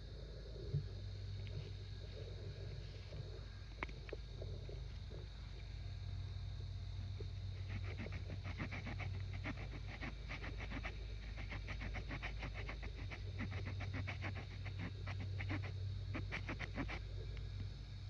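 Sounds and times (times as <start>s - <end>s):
small saw cutting a stick: 7.7s - 17.0s.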